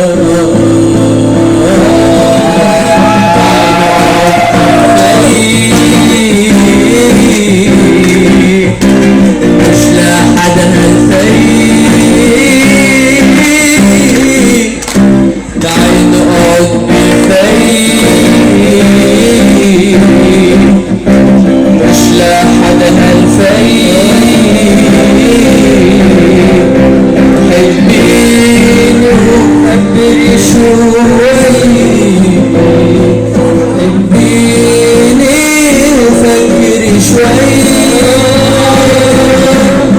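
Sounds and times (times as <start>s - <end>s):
person singing: 0.0s - 39.9s.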